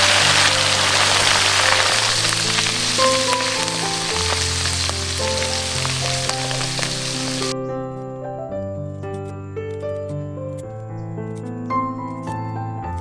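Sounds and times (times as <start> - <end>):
food sizzling in a pan: 0.0 - 7.5
background music: 0.0 - 7.6.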